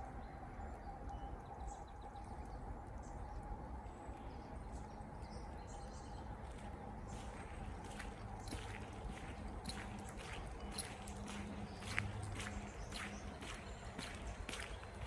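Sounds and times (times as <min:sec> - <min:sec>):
steady low rumble: 0:02.5 - 0:15.0.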